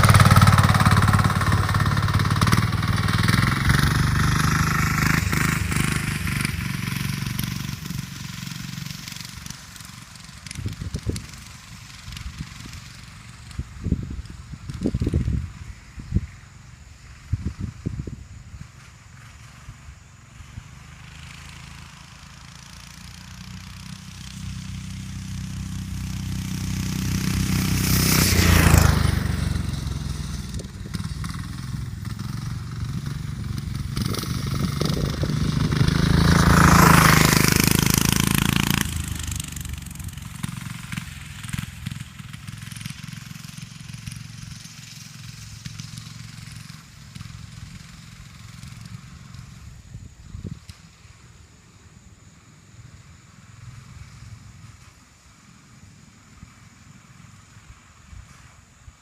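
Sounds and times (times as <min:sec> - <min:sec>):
go-kart engine passing by: 0:00.0 - 0:59.0.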